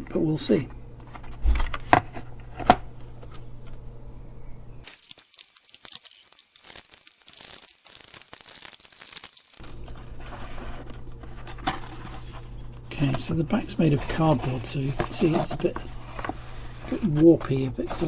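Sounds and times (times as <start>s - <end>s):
cardboard tearing and scraping: 4.9s - 12.3s.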